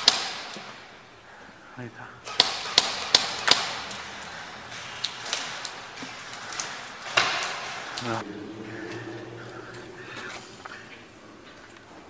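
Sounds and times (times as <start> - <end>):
airsoft gun shots: 0.0 - 0.8.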